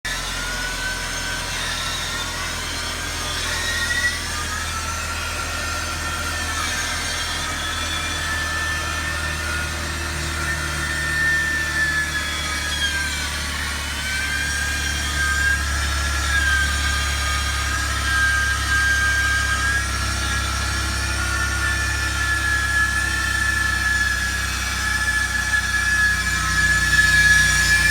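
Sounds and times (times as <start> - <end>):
high wavering whine: 0.1 - 27.9
low engine hum: 19.9 - 27.9.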